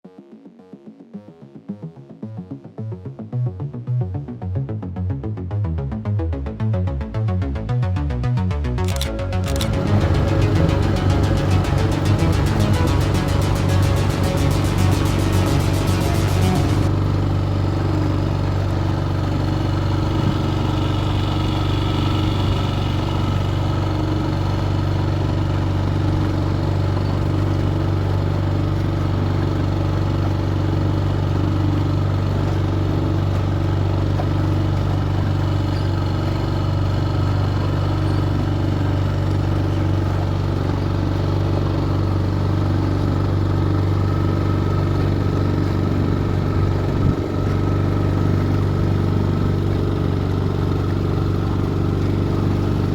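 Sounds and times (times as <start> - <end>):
boat engine droning: 8.9 - 52.9.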